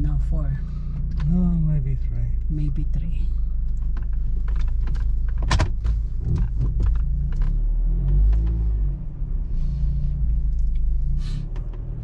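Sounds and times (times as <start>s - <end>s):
car engine low rumble: 0.0s - 12.0s.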